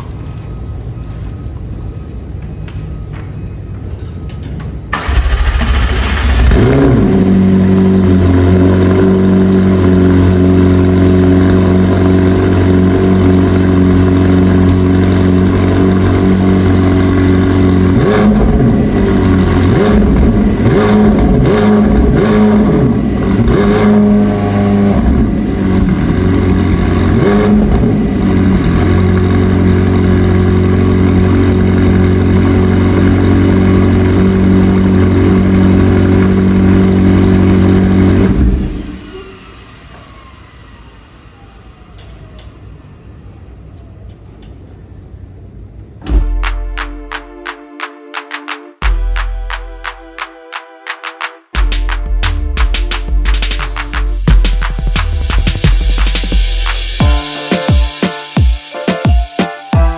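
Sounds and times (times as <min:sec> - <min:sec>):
car engine idling and revving: 0:04.9 - 0:40.2, 0:51.6 - 0:57.0.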